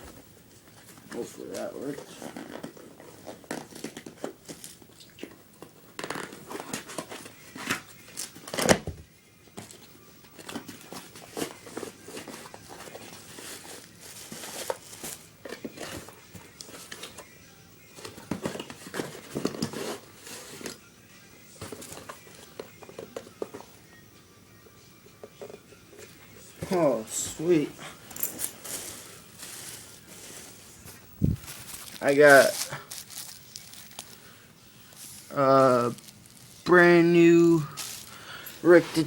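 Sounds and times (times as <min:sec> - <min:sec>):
package rustling and tearing: 0:01.1 - 0:08.8, 0:10.4 - 0:17.2, 0:28.1 - 0:39.0.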